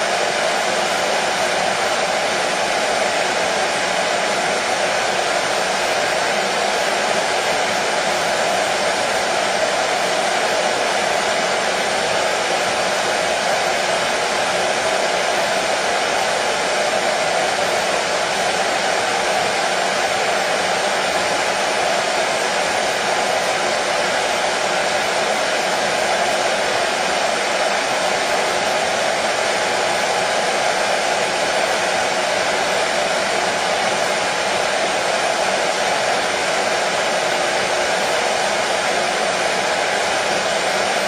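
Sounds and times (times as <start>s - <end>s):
hair dryer running: 0.0s - 41.0s.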